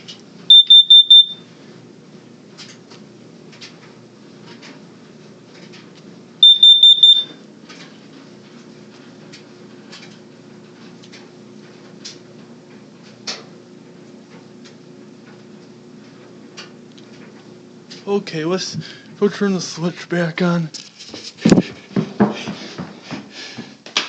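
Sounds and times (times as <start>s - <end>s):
smoke alarm beeps: 0.5s - 1.5s, 6.4s - 7.4s.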